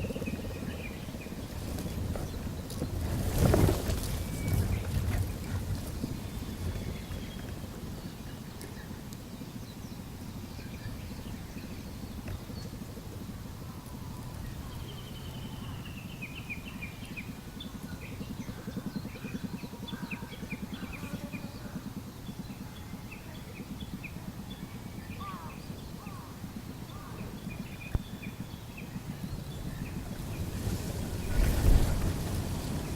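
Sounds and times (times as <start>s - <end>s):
low outdoor rumble: 0.0s - 32.9s
small birds chirping: 0.0s - 32.9s.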